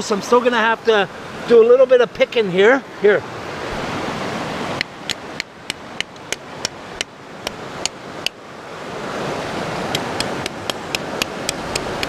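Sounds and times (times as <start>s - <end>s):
river water rushing: 0.0s - 12.0s
metal pick striking rock: 4.8s - 8.4s, 9.9s - 12.0s.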